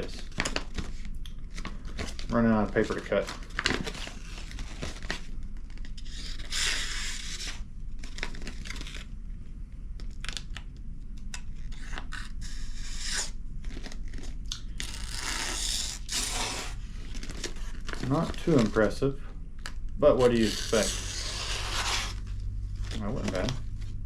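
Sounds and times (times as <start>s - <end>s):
knife cutting paper: 11.6s - 18.8s, 20.1s - 22.2s
paper rustling: 16.0s - 19.0s, 20.1s - 24.0s.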